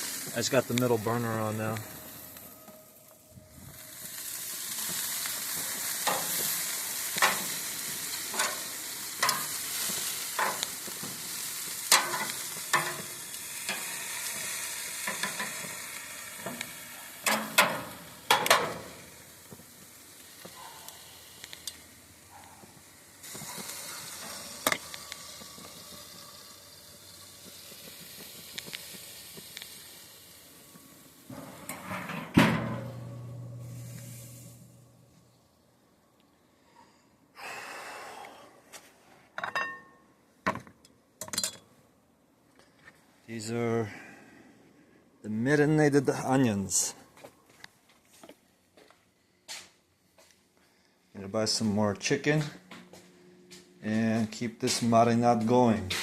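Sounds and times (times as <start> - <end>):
chicken sizzling on grill: 0.0 - 35.6.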